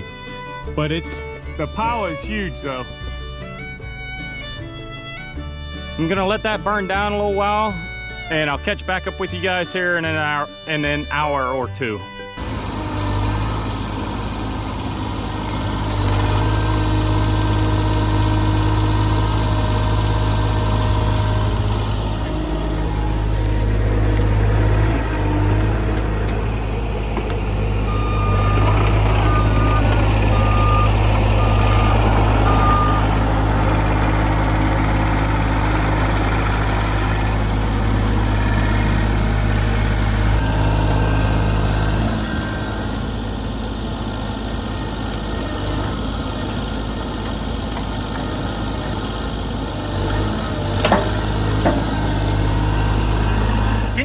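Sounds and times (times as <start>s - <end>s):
excavator diesel engine running: 0.0s - 54.0s
travel alarm beeping: 27.8s - 33.3s.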